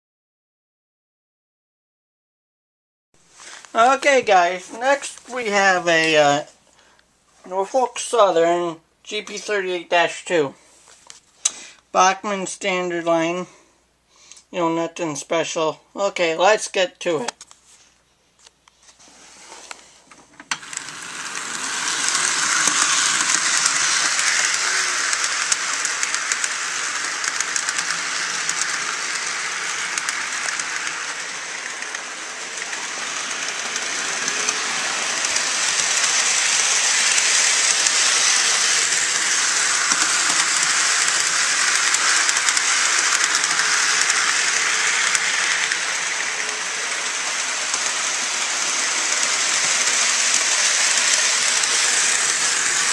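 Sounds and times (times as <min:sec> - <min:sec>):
model train rolling on track: 0:19.5 - 0:52.9
rail clicks: 0:20.2 - 0:52.9.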